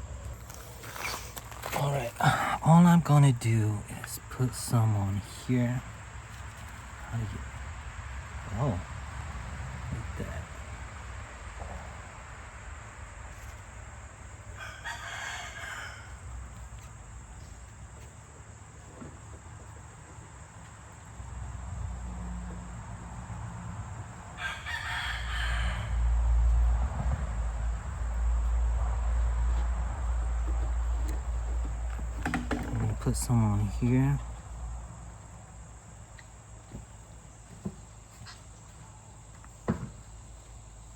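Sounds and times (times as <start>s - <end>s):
rooster crowing: 14.4s - 16.6s, 24.4s - 27.0s.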